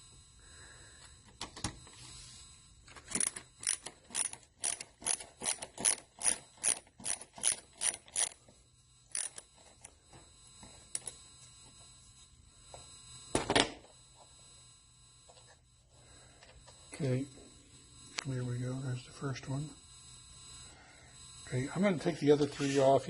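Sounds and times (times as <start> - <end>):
ratcheting driver clicking: 3.2 - 8.3.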